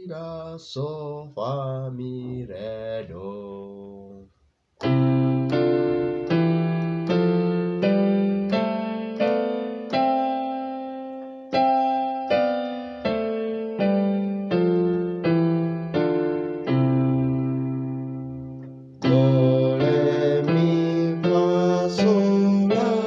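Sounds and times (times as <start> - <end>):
piano scale on keyboard: 4.8 - 23.0.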